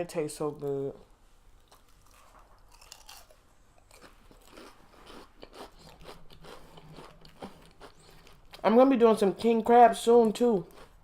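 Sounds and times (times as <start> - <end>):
person chewing crunchy food: 1.6 - 8.7, 10.6 - 11.0.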